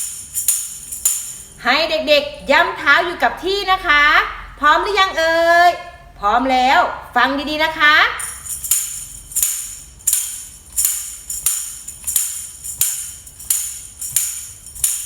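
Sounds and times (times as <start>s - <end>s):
tambourine struck slowly: 0.0s - 1.6s, 8.2s - 15.0s.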